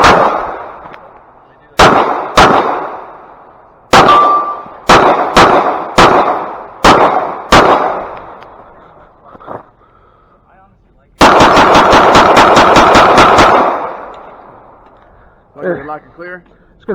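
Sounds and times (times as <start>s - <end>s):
pistol shots echoing: 0.0s - 8.6s, 11.2s - 14.8s
steady ringing tone: 4.1s - 4.8s.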